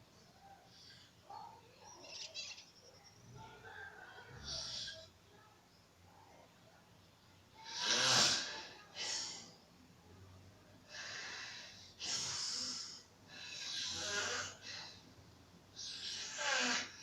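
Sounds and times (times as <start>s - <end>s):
woman snoring: 13.4s - 14.8s, 15.8s - 17.0s.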